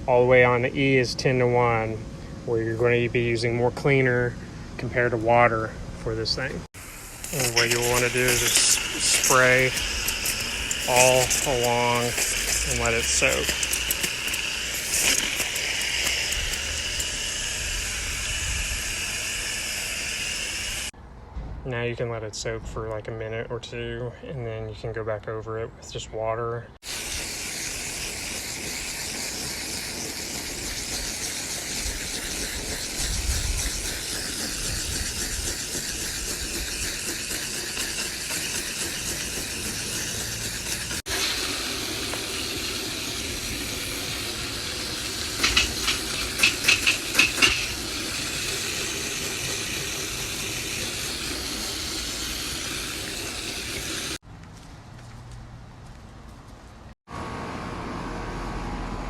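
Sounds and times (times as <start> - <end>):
hose water spraying on metal fins: 6.8 - 20.9, 26.8 - 54.2.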